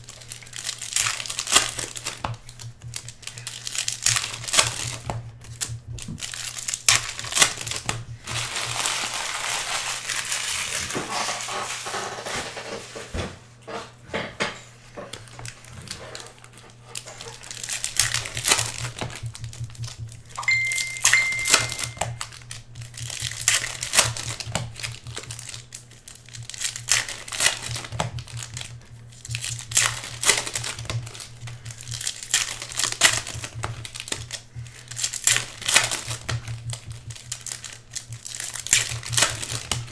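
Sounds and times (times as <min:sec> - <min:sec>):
trading cards clicking and rustling: 0:00.0 - 0:12.8, 0:15.0 - 0:39.9
wrappers crinkling and tearing: 0:00.0 - 0:13.0, 0:15.1 - 0:39.9
high beep: 0:20.4 - 0:22.1.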